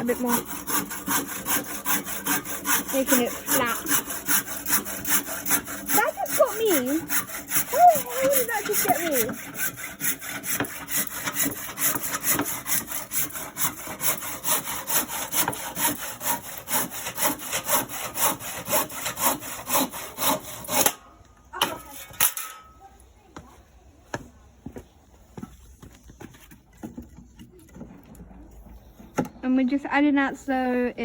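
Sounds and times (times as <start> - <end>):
hand saw cutting wood: 0.0 - 22.7.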